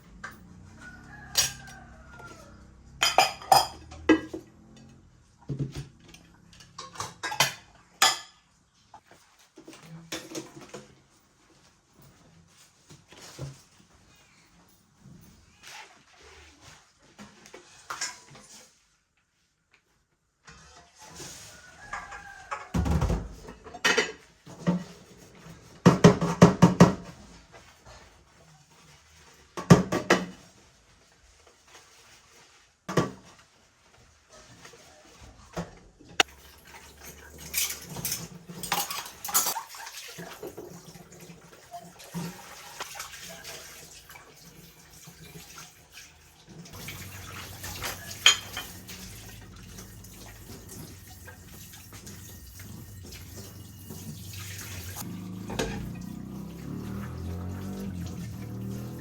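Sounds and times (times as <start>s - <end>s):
dishes and cutlery clattering: 1.3s - 1.8s, 2.9s - 4.5s, 6.6s - 8.4s, 21.9s - 25.1s, 36.2s - 40.8s, 46.7s - 56.5s.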